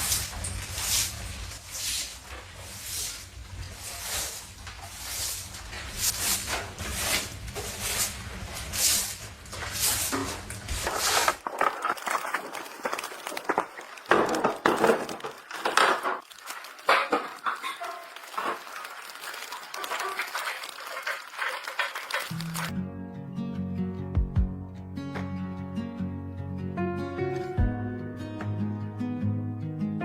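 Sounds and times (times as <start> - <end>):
knocks and rustling handling noises: 0.0 - 22.7.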